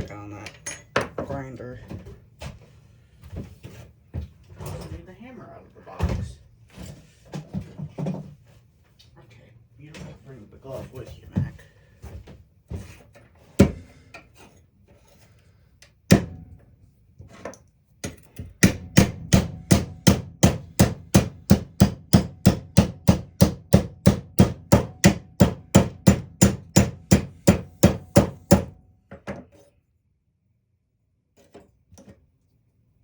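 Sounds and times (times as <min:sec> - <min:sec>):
hammer striking metal: 0:18.6 - 0:28.8.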